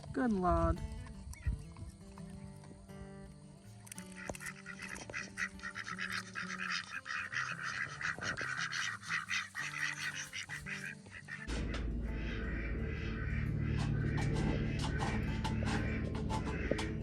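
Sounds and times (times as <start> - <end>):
background music: 0.1 - 17.0
poultry chattering: 3.9 - 17.0.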